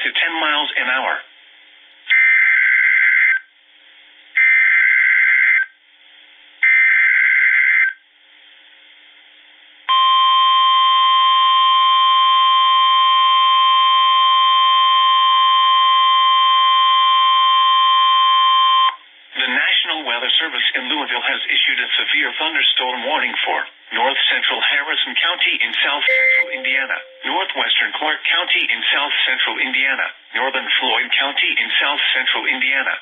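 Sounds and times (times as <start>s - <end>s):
steady warning alarm tone: 26.1s - 27.5s.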